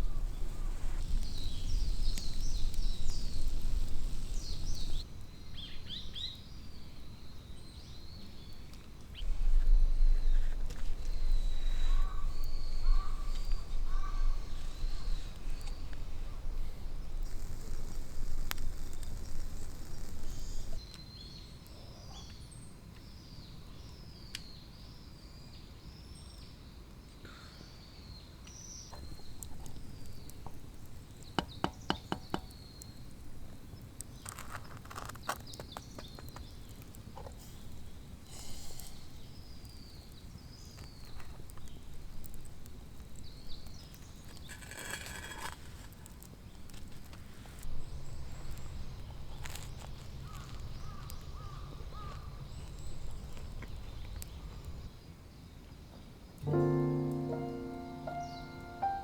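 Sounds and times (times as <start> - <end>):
small bird chirping: 0.0 - 24.7, 56.4 - 59.0.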